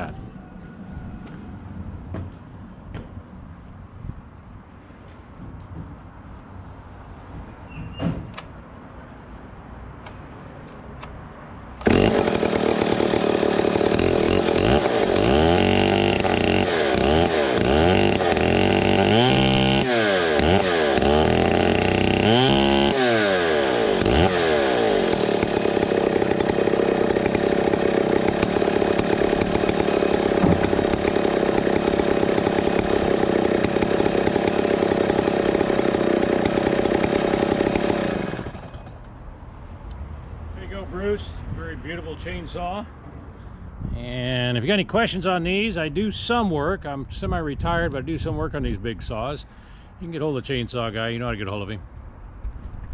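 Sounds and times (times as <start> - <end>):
chainsaw revving: 11.8 - 39.0.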